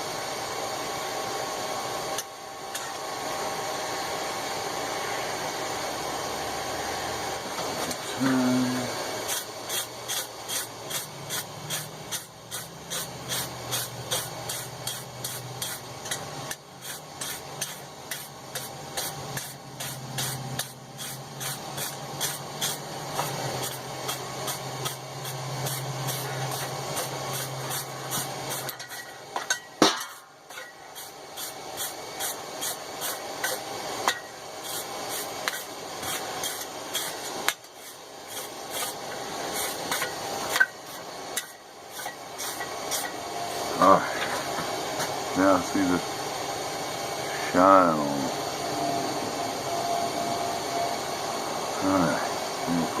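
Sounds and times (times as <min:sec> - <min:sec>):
wire brush scrubbing steel: 0:08.1 - 0:43.2.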